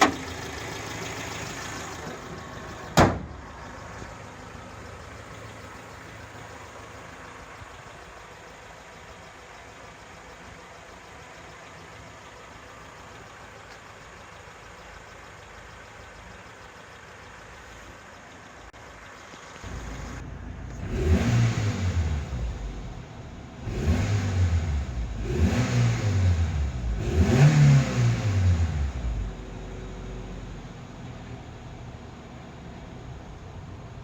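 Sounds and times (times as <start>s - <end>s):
car engine idling: 0.0s - 34.0s
sharp thump: 2.9s - 3.4s.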